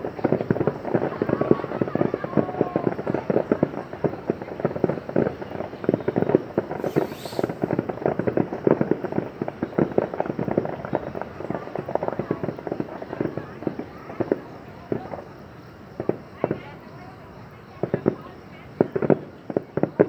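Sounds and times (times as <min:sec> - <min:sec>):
fireworks bangs and pops: 0:00.0 - 0:20.0
brief hiss: 0:06.7 - 0:07.9.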